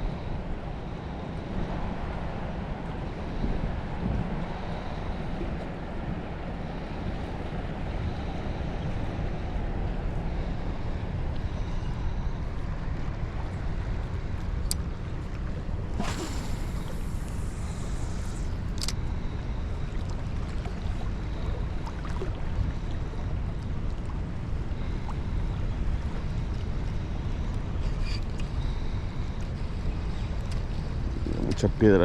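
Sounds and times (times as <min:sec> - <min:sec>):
wind on microphone: 0:00.0 - 0:32.0
flowing river: 0:00.1 - 0:29.6
brief hiss: 0:16.0 - 0:18.6.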